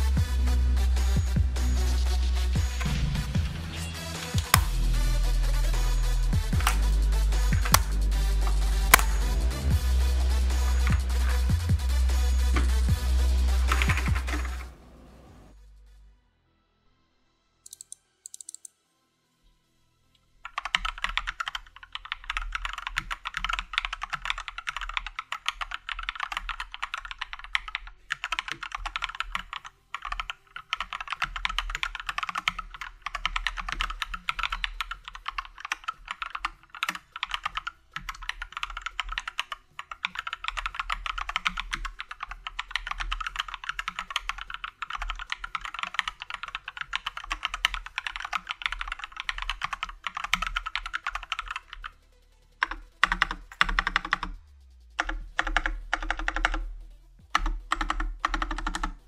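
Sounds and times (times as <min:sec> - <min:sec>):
typing on mechanical keyboard: 0:06.5 - 0:09.2, 0:10.6 - 0:11.5, 0:13.6 - 0:14.7, 0:17.7 - 0:18.7, 0:20.4 - 0:52.0, 0:52.6 - 0:54.4, 0:55.0 - 0:56.7, 0:57.3 - 0:59.0.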